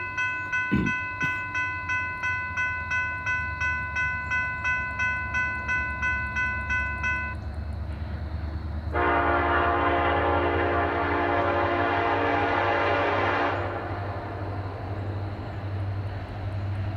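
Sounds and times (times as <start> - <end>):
bell ringing: 0.0 - 7.4
diesel locomotives rumbling: 0.0 - 16.9
locomotive air horn: 8.9 - 14.6.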